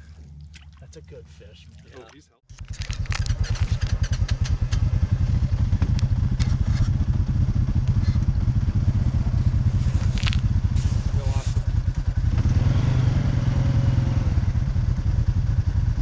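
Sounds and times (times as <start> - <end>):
clattering clicks: 2.5 - 4.9
atv engine running: 2.5 - 16.0.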